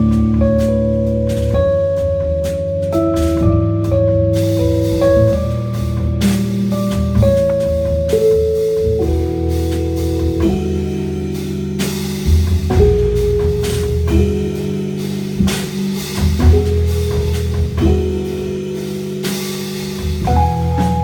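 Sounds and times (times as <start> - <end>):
bass line: 0.0 - 21.0
electric piano chords: 0.0 - 21.0
drum kit cymbal crashes: 4.4 - 21.0.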